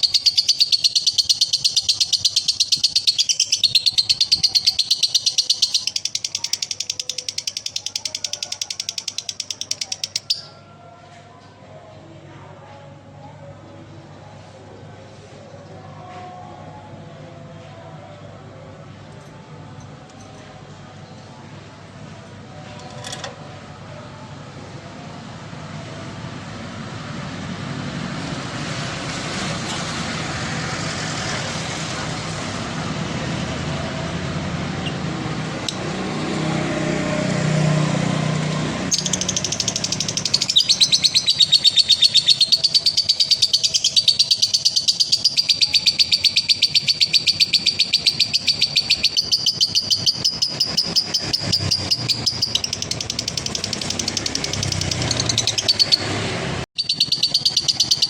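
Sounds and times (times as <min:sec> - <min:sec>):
lovebird rattling chatter: 0:00.0 - 0:10.4, 0:38.9 - 0:56.0, 0:56.8 - 0:58.0.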